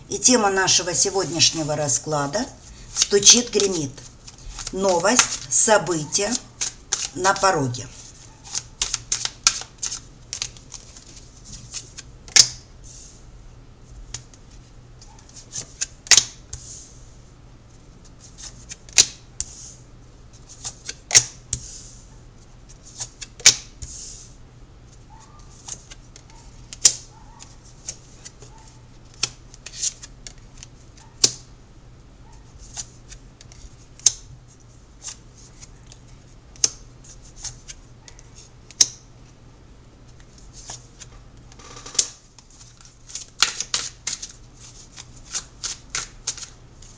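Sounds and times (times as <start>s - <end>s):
cards being shuffled: 2.8s - 12.5s, 25.5s - 31.3s, 35.0s - 38.9s, 40.1s - 46.9s.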